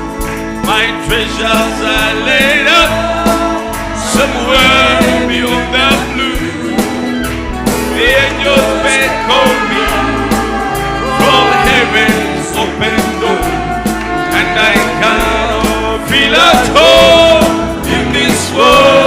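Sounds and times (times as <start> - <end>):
instrumental backing with bass: 0.0 - 19.0.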